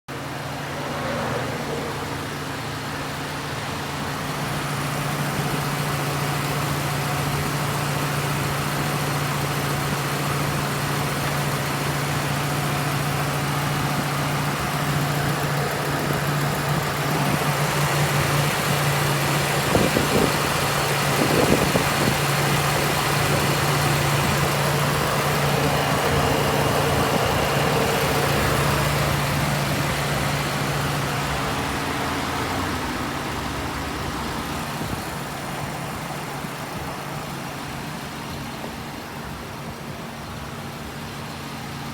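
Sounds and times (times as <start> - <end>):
car engine idling: 0.1 - 41.9.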